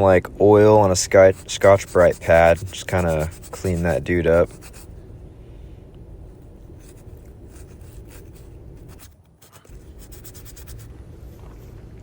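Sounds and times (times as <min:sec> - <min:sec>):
scouring pad scrubbing metal: 0:01.1 - 0:04.0.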